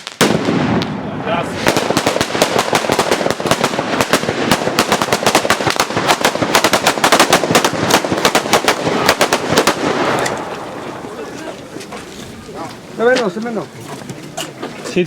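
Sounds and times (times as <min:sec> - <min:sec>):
firecracker bangs: 0:00.0 - 0:10.7.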